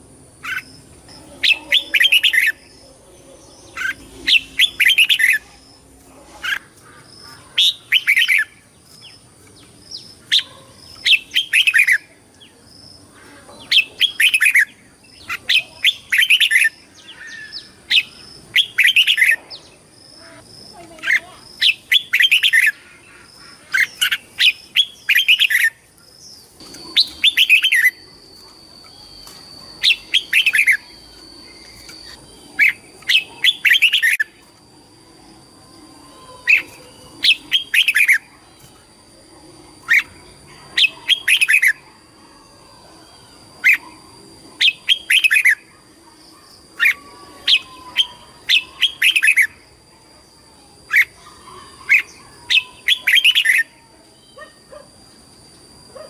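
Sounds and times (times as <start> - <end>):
bulbul singing: 0.0 - 49.8, 50.8 - 54.8.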